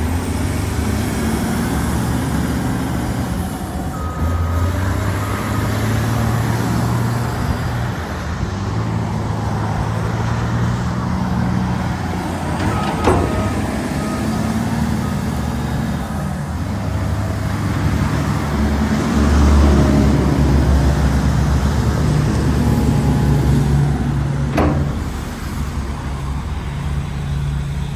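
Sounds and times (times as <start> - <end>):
wheel loader diesel engine running: 0.0 - 27.9
sharp knocks: 24.5 - 25.3.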